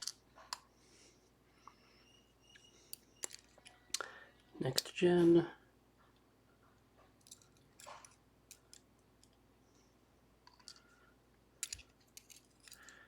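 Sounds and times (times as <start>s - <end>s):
metal lock parts clicking: 2.9s - 3.8s, 11.6s - 13.0s.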